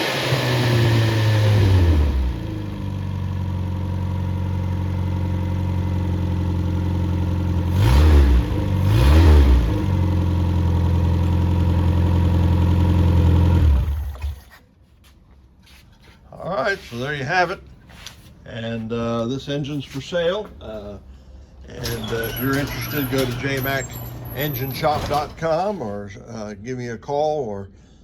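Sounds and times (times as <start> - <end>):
car engine idling and revving: 0.0 - 14.5.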